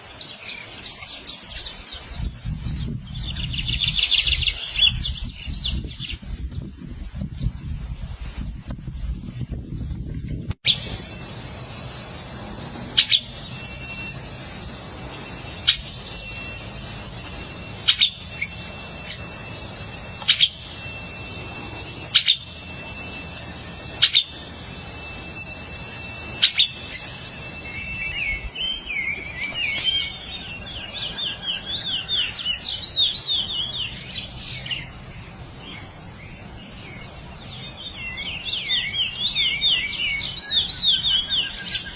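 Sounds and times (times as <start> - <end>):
bird warbling song: 0.0 - 41.9
high-pitched buzz: 8.4 - 37.4.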